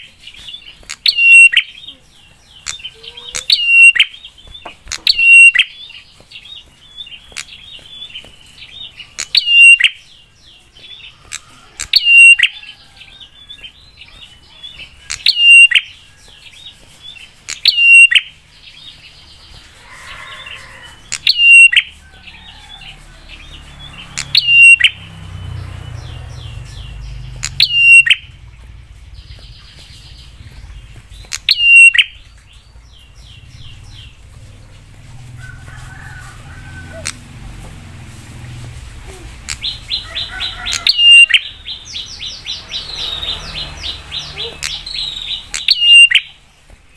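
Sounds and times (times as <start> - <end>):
bird chattering notes: 0.0 - 6.1, 26.2 - 34.9, 39.0 - 46.4
low rumble: 24.9 - 40.4.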